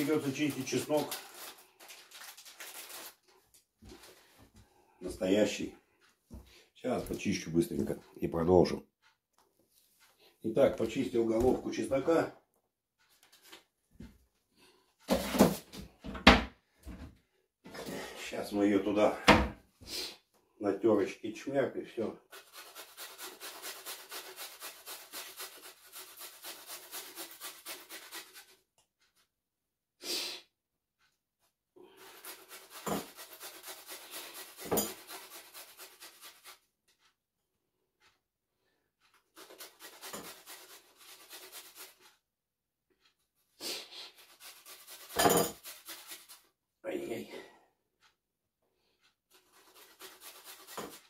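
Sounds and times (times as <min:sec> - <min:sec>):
garlic rasping on hand grater: 0:22.3 - 0:28.6, 0:31.9 - 0:36.6, 0:39.3 - 0:42.1, 0:44.0 - 0:46.4, 0:49.3 - 0:51.0.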